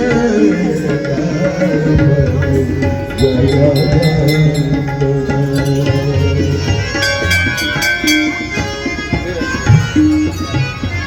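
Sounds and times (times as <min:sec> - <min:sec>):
devotional music with held notes: 0:00.0 - 0:11.0
hand drum beats: 0:00.0 - 0:11.0
bright percussion strokes: 0:00.7 - 0:11.0.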